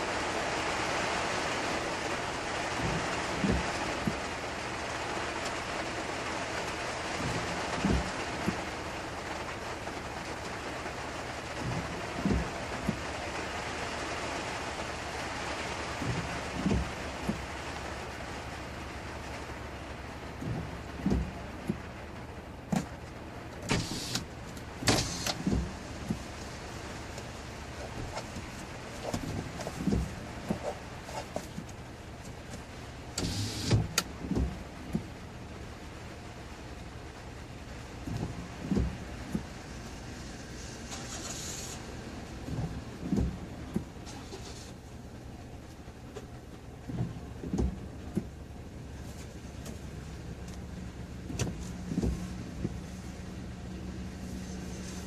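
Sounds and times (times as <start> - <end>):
steady rain: 0.0 - 55.0
knocks and swishes: 1.8 - 4.6, 5.3 - 55.0
short low thumps: 42.2 - 44.0, 46.8 - 54.9.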